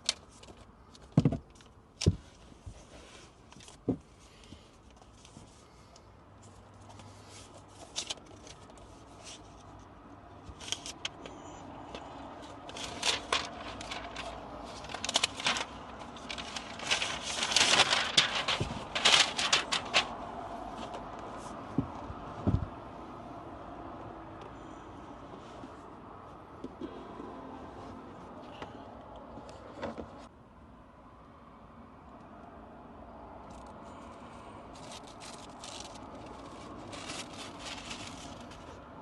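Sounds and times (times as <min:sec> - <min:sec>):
crinkling wrap: 0:12.5 - 0:21.1, 0:34.7 - 0:38.9
clicks and scrapes of packaging: 0:34.8 - 0:38.8.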